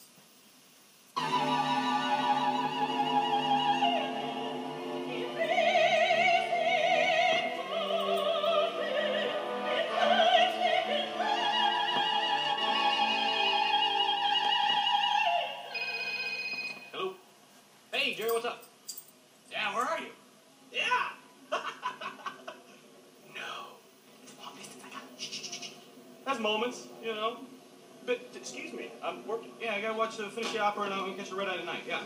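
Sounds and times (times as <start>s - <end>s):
soprano singing with vibrato: 1.2s - 15.9s.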